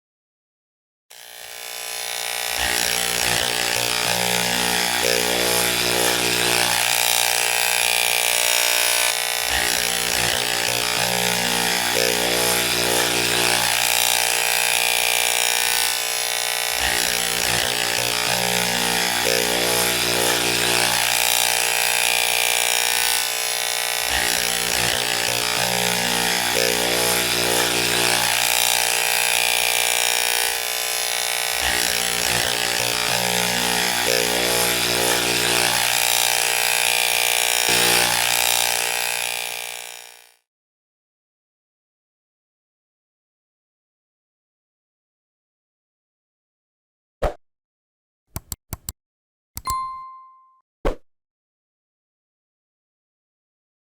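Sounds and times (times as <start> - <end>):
electric hair clippers buzzing: 1.1 - 40.5.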